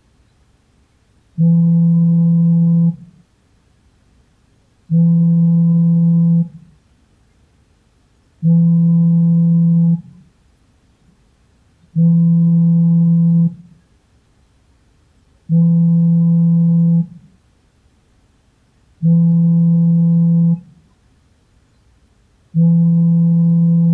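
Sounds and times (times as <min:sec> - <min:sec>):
smartphone vibrating buzz: 0:01.4 - 0:03.2, 0:04.9 - 0:06.7, 0:08.4 - 0:10.2, 0:11.9 - 0:13.7, 0:15.5 - 0:17.3, 0:19.0 - 0:20.8, 0:22.6 - 0:23.9.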